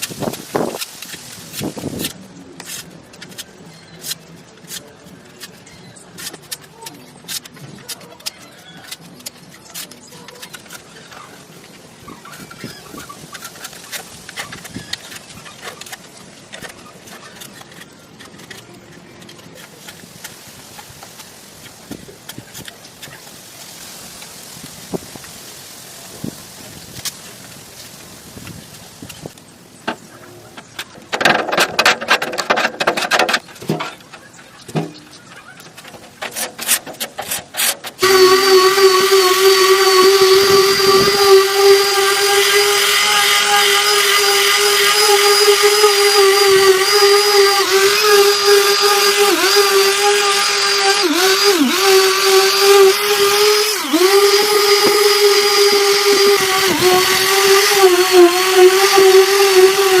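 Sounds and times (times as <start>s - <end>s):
electric power tool running: 37.9s - 60.0s.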